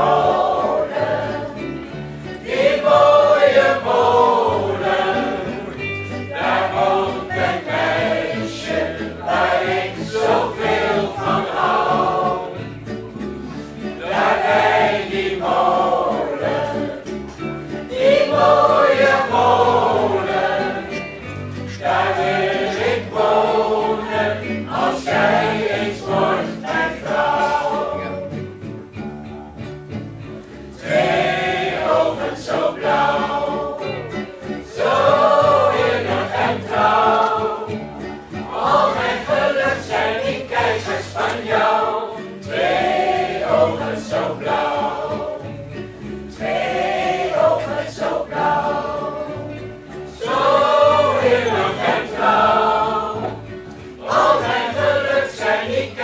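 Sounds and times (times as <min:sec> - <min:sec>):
choir singing: 0:00.0 - 0:29.7, 0:30.6 - 0:56.0.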